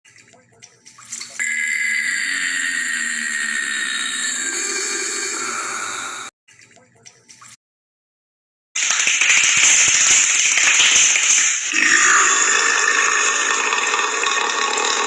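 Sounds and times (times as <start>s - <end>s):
man burping: 11.7s - 15.0s.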